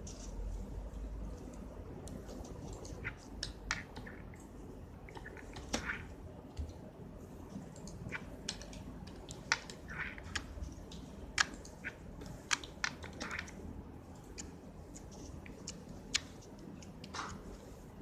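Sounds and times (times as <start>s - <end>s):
slime squelches: 0.0s - 6.4s, 7.4s - 18.0s.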